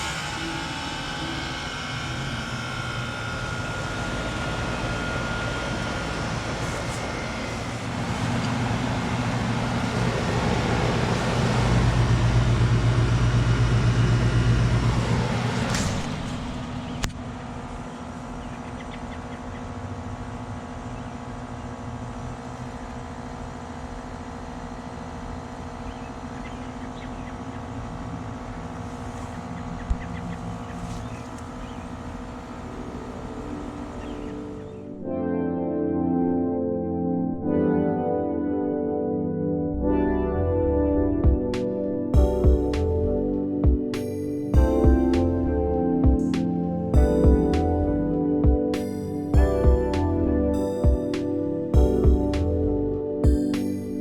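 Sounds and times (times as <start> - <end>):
heat pump rushing hiss: 0.0 - 16.9
heat pump running hum: 0.0 - 34.9.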